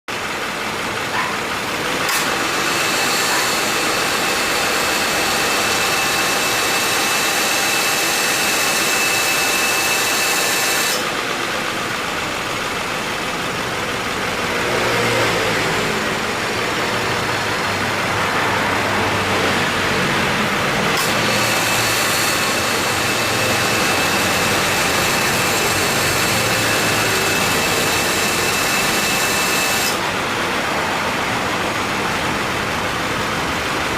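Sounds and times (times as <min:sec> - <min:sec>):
car engine idling: 0:00.1 - 0:05.9, 0:11.0 - 0:21.4, 0:30.0 - 0:33.9
compressor clutch clicking: 0:01.9 - 0:02.6
compressor whine and hiss: 0:01.9 - 0:13.4.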